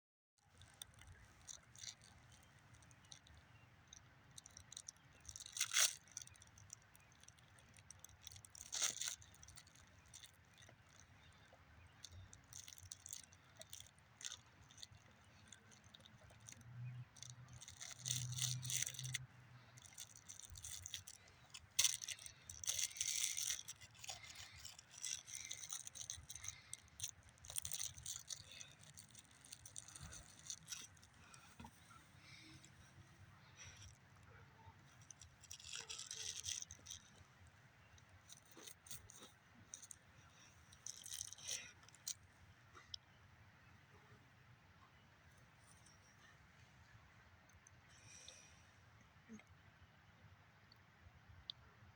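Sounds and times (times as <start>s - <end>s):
dog chewing crackly object: 0.5s - 32.4s, 34.9s - 37.2s, 38.3s - 40.0s, 40.8s - 42.2s.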